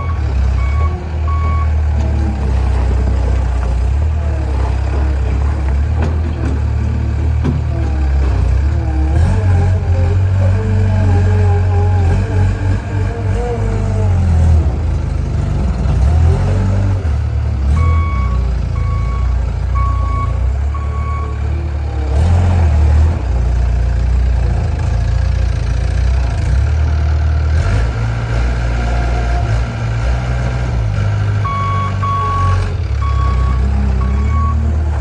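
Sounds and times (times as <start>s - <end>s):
reversing alarm beeping: 0.0s - 1.8s, 17.8s - 21.5s, 31.4s - 34.7s
loader engine running: 0.0s - 35.0s.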